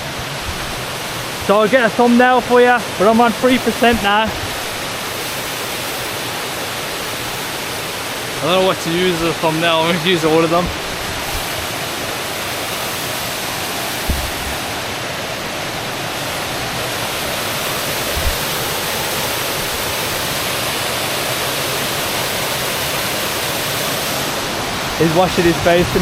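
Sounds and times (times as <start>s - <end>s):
low thumps: 0.0s - 1.5s, 3.4s - 5.3s, 8.8s - 12.1s, 13.9s - 16.9s, 17.8s - 18.9s
waterfall rushing: 0.0s - 26.0s.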